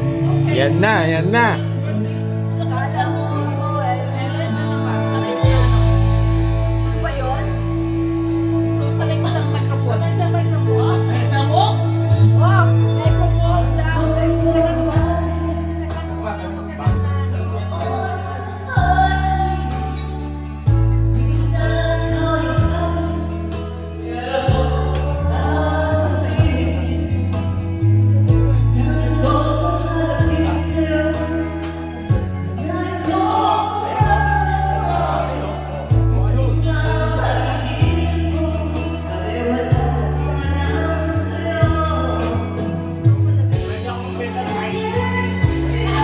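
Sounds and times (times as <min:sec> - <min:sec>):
karaoke backing music: 0:00.0 - 0:46.0
person singing: 0:00.5 - 0:01.6.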